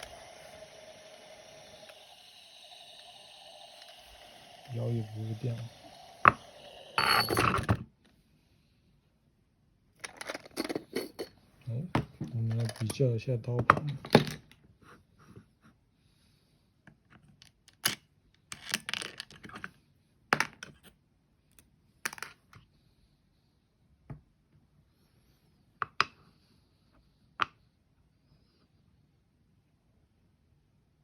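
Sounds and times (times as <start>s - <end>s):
metal grinder parts clinking: 6.7s - 7.8s.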